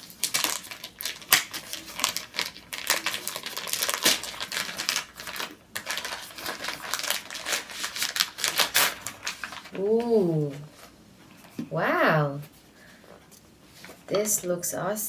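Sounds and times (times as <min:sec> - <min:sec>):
bag crinkling and rustling: 0:00.0 - 0:10.1.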